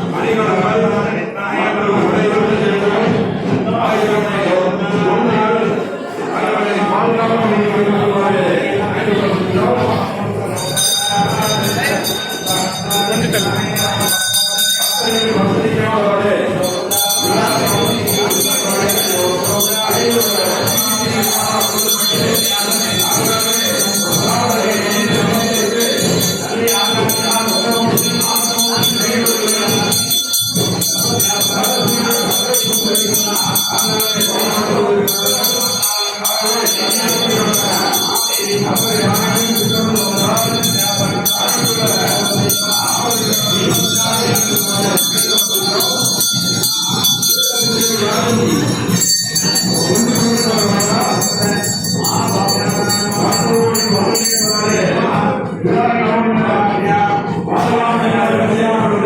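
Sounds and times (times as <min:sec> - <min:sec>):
many voices singing: 0:00.0 - 0:59.0
jingling bells: 0:10.4 - 0:55.1.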